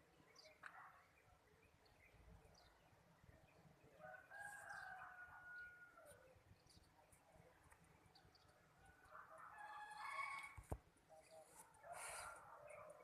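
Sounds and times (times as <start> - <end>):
small birds chirping: 0.0 - 13.0
rooster crowing: 9.5 - 10.6.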